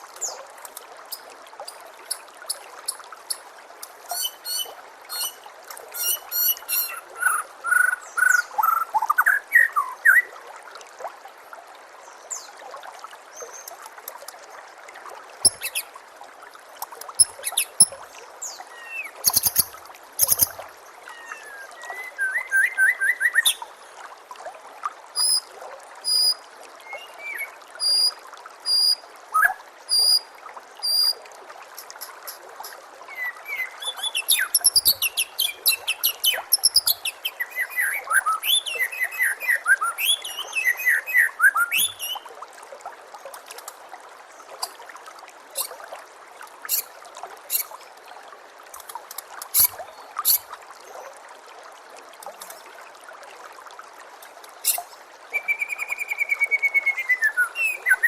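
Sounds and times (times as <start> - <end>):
stream trickling: 0.0 - 58.0
songbird singing: 4.1 - 5.4, 15.4 - 15.9, 17.2 - 23.6, 31.8 - 42.2, 55.3 - 58.0.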